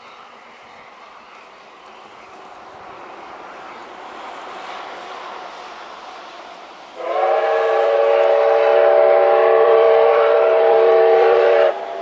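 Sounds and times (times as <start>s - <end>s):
steam locomotive whistle: 7.0s - 12.0s.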